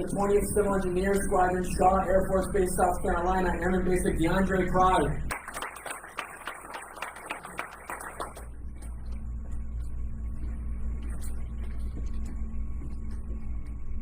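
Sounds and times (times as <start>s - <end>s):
faint humming tones: 0.0s - 14.0s
applause: 5.3s - 8.6s.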